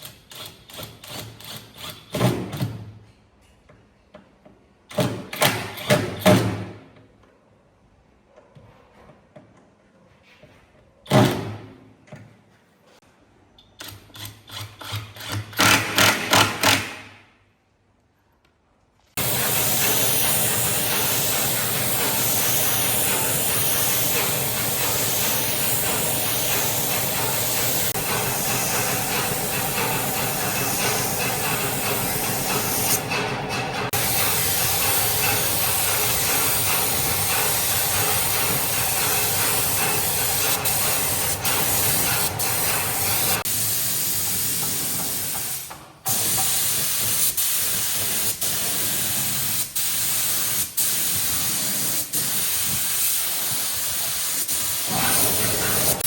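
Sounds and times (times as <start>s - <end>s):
loud steady hissing: 19.2s - 56.0s.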